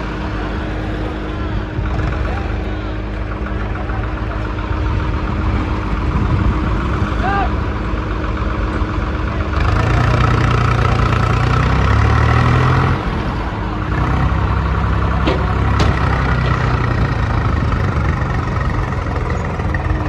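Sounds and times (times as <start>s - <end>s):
diesel engine under load: 0.0s - 20.0s
sharp knocks: 15.2s - 16.8s.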